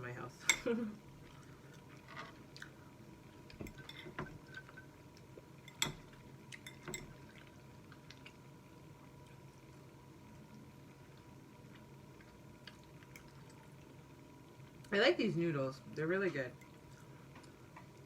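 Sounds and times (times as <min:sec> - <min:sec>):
wet chewing and mouth smacks: 0:07.3 - 0:08.4.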